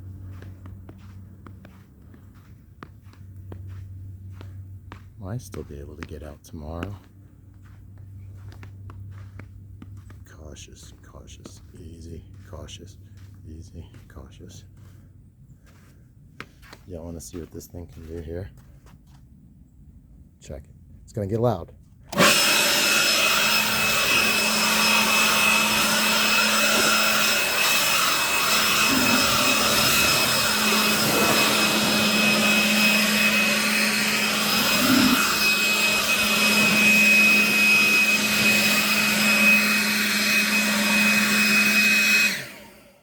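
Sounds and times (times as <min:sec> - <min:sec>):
leaf blower whining: 0:00.0 - 0:12.5, 0:22.1 - 0:43.0.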